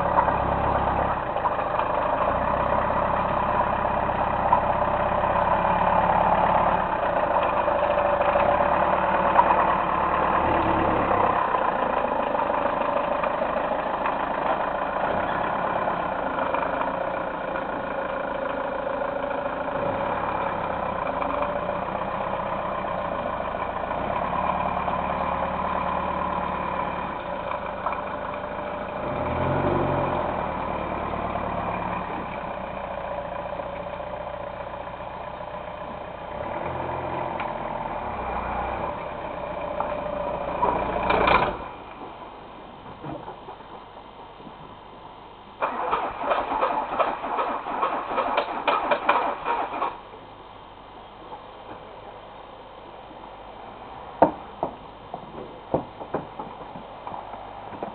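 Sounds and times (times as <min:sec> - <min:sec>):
van engine running: 0:00.0 - 0:57.9.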